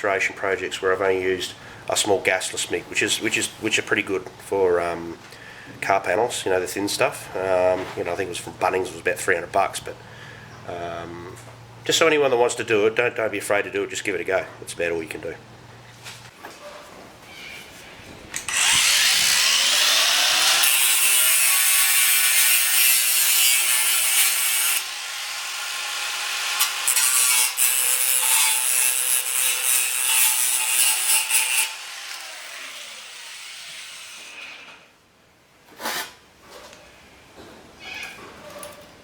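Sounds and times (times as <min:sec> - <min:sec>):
rotary tool cutting sheet metal: 0:18.5 - 0:34.8.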